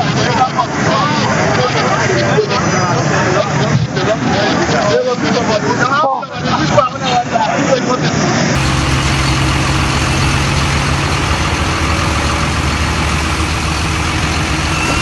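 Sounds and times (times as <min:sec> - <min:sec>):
constant noise: 0:00.0 - 0:15.0
heavy engine idling: 0:07.8 - 0:15.0.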